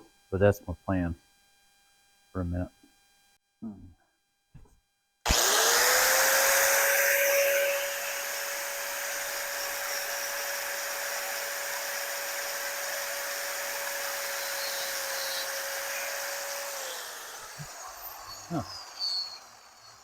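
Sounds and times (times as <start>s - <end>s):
fan winding down: 5.3s - 20.0s
heat gun blowing: 5.3s - 20.0s.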